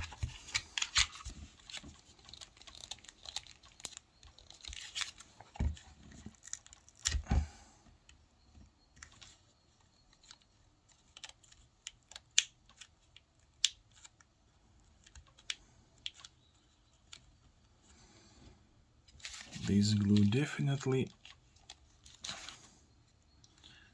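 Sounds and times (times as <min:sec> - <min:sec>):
plastic laptop parts clicking: 0:00.0 - 0:07.4, 0:09.0 - 0:17.5.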